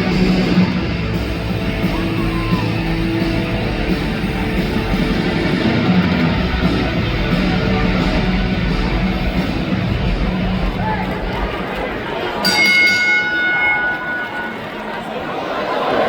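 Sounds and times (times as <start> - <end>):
loud hard rock music: 0.0 - 11.0.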